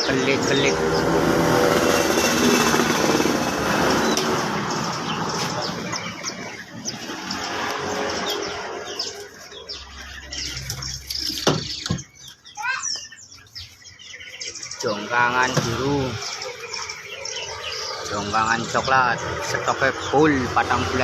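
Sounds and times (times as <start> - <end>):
bird warbling calls: 0.0 - 21.0
songbirds chirping: 0.0 - 21.0.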